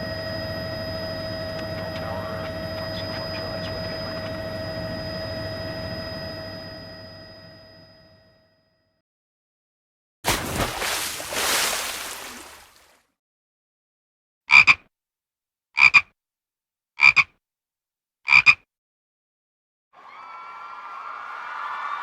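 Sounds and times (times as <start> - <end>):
frog croaking: 1.5 - 4.6, 14.5 - 14.8, 15.8 - 16.1, 17.0 - 17.3, 18.3 - 18.6.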